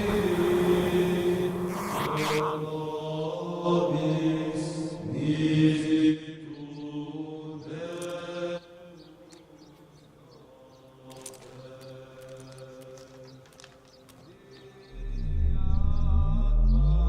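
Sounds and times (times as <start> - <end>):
voices chanting long notes: 0.0 - 9.0.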